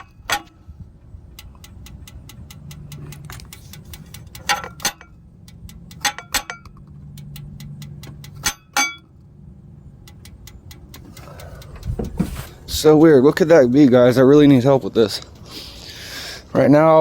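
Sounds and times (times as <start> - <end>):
metal taps on headers: 0.0 - 13.4
engine headers ticking: 0.0 - 17.0.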